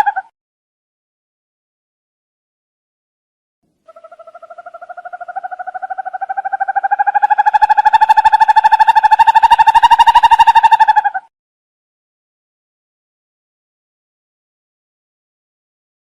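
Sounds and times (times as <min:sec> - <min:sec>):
owl trilling: 0:00.0 - 0:00.3, 0:03.9 - 0:11.3.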